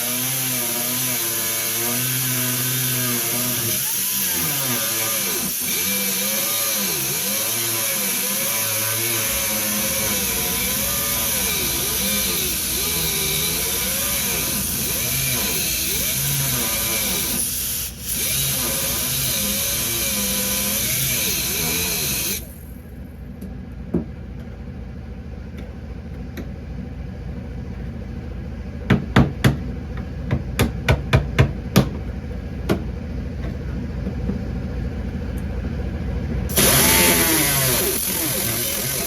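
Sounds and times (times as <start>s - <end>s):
power tool cutting metal: 0.0s - 22.6s, 36.5s - 39.0s.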